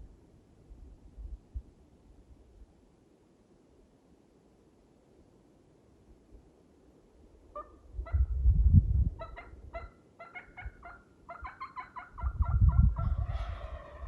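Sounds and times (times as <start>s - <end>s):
wild turkey calling: 7.5s - 8.3s, 9.2s - 14.0s.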